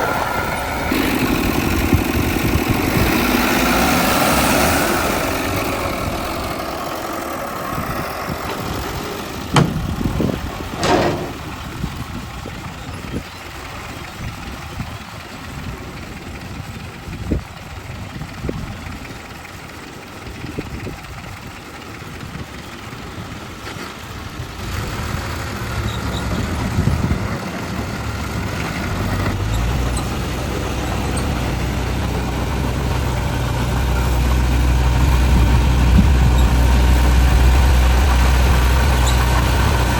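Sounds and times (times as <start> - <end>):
heavy diesel engines running: 0.0 - 39.9
sharp knocks: 9.5 - 10.1, 10.8 - 11.5.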